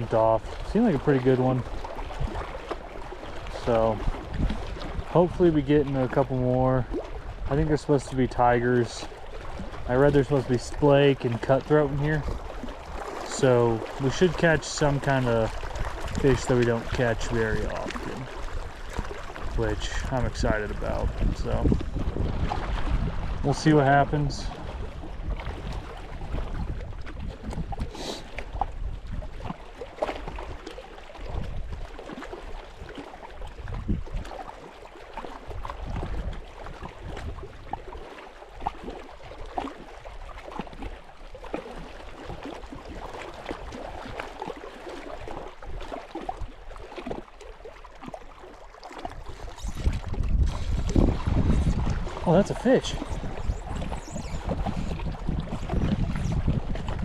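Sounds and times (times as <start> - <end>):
wind buffeting microphone: 0.0 - 2.6, 3.4 - 29.6, 33.4 - 34.4, 35.4 - 37.9, 49.0 - 57.0.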